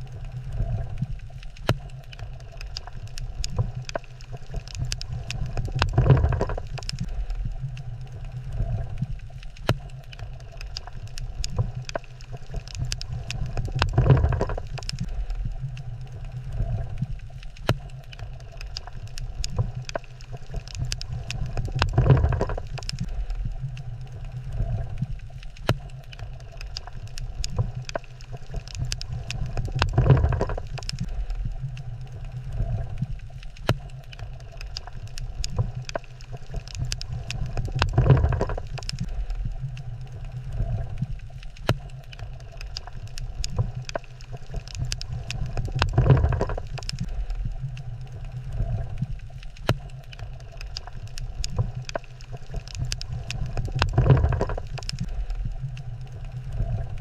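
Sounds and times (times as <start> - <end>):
water low rumble: 0.0 - 57.0.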